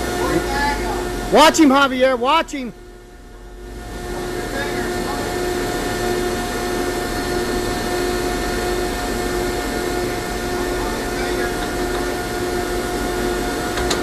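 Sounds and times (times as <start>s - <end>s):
baler machinery whirring hum: 0.0s - 14.0s.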